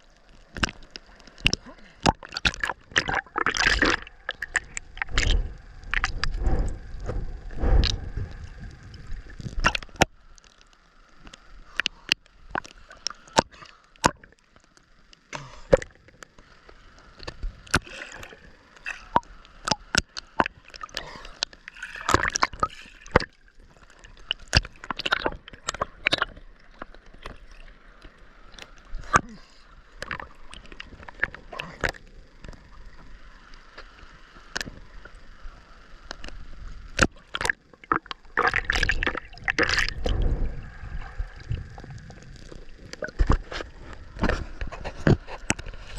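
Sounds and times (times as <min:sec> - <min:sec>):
small water splashes: 0:00.0 - 0:06.3, 0:17.1 - 0:33.0, 0:36.1 - 0:45.9
sea water sloshing and gurgling: 0:00.0 - 0:45.9.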